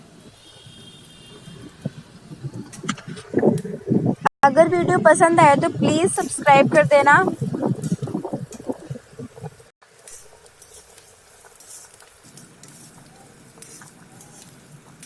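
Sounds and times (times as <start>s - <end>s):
food sizzling in a pan: 9.8s - 15.0s.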